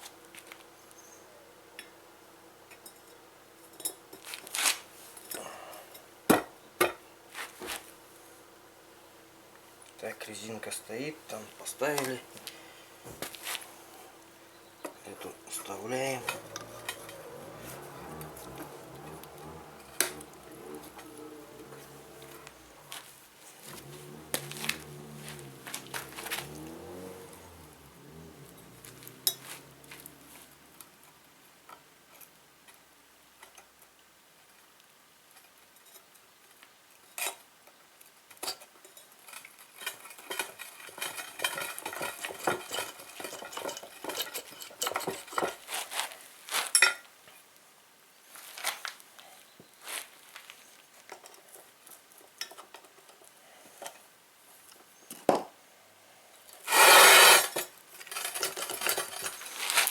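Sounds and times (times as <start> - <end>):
steel parts clinking and scraping: 14.8 - 30.6, 38.4 - 47.1, 56.5 - 59.9.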